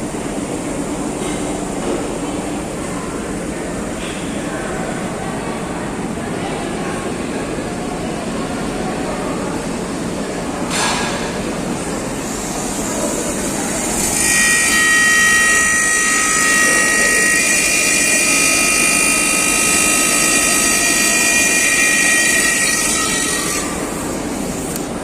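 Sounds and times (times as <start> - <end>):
treadmill motor whining: 12.1 - 25.0.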